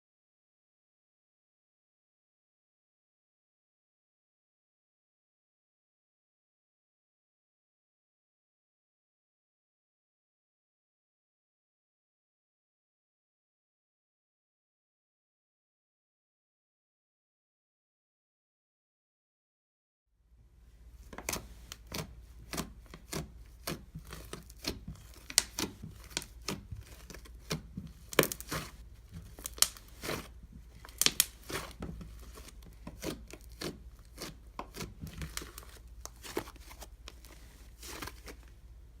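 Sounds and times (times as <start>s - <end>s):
slime popping and crackling: 21.2s - 38.3s.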